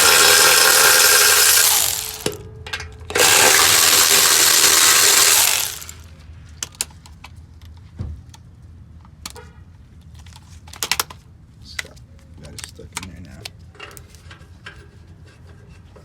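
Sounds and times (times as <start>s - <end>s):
power tool spinning bolts: 0.0s - 2.4s, 3.1s - 6.1s.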